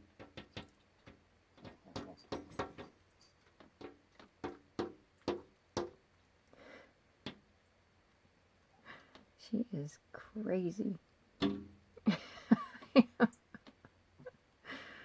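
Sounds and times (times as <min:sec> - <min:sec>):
bird tapping on window glass: 0:00.0 - 0:06.0, 0:11.4 - 0:11.9.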